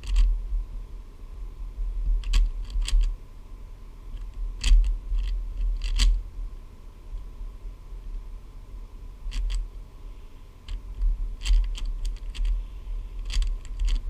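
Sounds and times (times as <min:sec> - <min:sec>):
plastic puzzle cube clicking: 0:00.0 - 0:00.3, 0:02.2 - 0:03.1, 0:04.2 - 0:06.2, 0:09.3 - 0:09.6, 0:11.4 - 0:12.6, 0:13.2 - 0:14.0.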